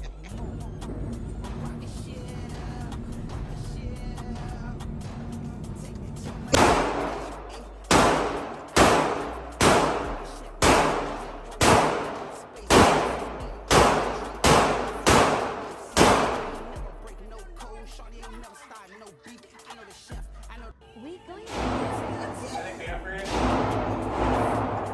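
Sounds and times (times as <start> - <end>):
gunshots echoing indoors: 6.5 - 17.1, 21.5 - 24.9.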